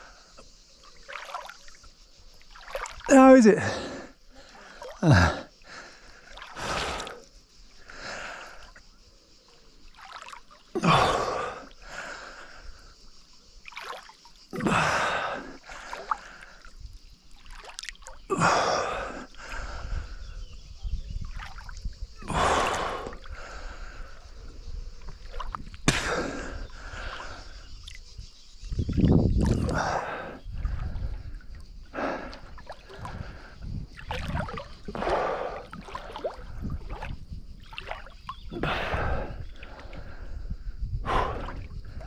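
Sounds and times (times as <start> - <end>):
water splashing: 0.8 - 8.7, 9.5 - 12.0, 13.6 - 19.8, 21.2 - 23.4, 25.0 - 28.1, 28.9 - 40.2
swimmer breathing hard: 3.4 - 8.8, 10.8 - 13.0, 22.2 - 24.5, 29.6 - 33.7, 34.3 - 36.9, 38.6 - 42.0.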